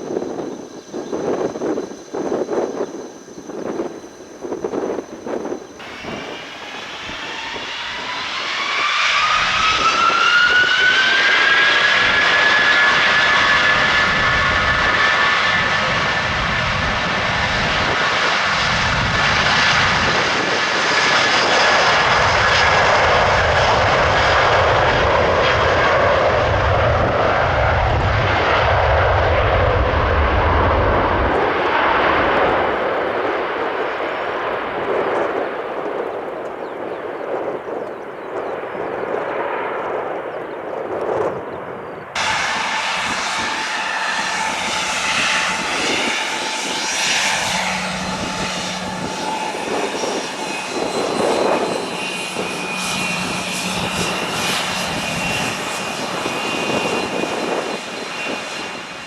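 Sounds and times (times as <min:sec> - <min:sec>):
jet engine fan whine: 0:00.0 - 0:59.0
jet engine roar: 0:00.0 - 0:59.0
deep rumble: 0:42.1 - 0:58.8.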